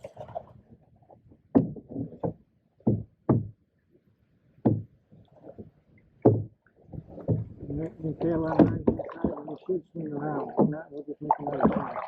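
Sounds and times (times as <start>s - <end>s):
rustling of paddling: 0.0s - 3.5s, 4.6s - 12.0s
paddles knocking on canoe hull: 1.5s - 3.6s, 4.6s - 4.9s, 6.2s - 12.0s.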